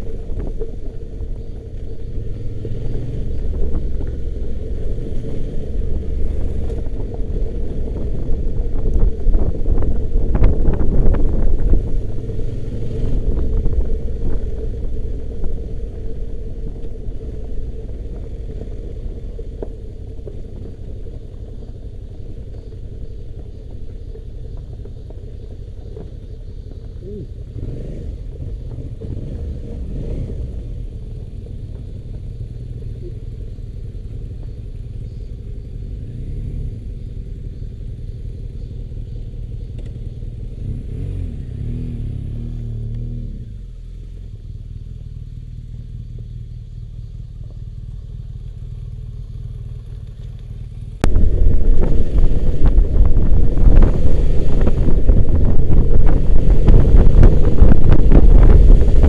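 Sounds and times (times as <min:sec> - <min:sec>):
motorcycle engine revving: 0:00.0 - 0:19.5, 0:26.5 - 0:45.9, 0:47.8 - 0:59.0
wind buffeting microphone: 0:00.0 - 0:35.3, 0:51.0 - 0:59.0.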